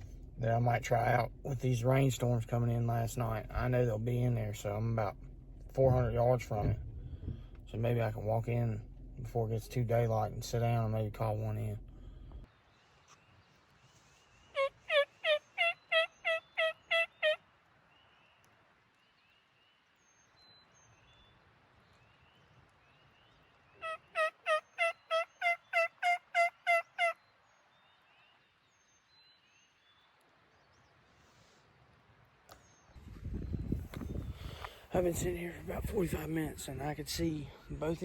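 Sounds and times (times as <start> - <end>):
turkey call yelps: 14.5 - 17.4, 23.8 - 27.2.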